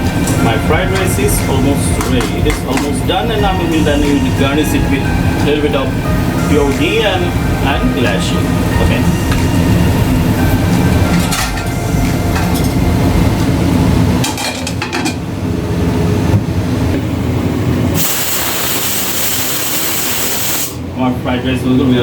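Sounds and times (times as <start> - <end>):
low rumbling: 0.0 - 14.4
pressure cooker steam hiss: 17.9 - 20.8.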